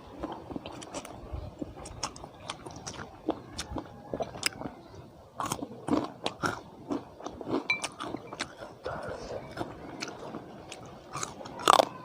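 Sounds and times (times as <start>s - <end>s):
person chewing crunchy food: 0.0s - 12.0s.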